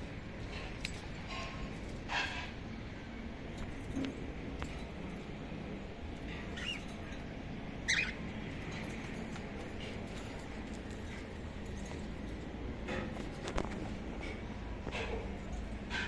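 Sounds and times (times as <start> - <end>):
low background hum: 0.0 - 16.0
cockatiel chirping: 7.8 - 8.2.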